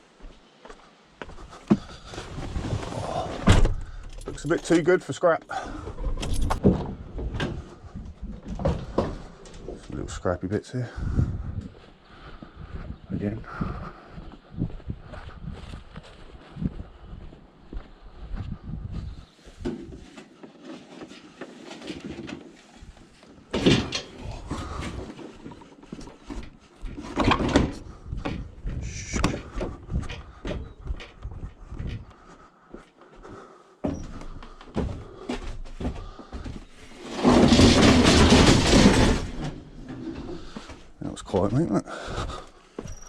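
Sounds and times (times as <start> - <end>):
scrap metal clattering: 36.8 - 40.9.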